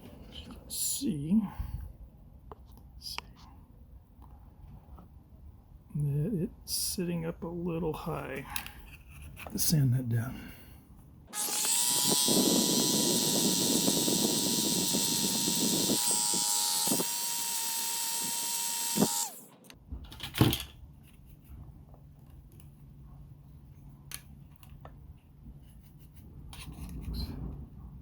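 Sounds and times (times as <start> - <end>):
rotary tool spinning down: 11.3 - 19.5
rotary tool sanding whine: 11.3 - 19.6.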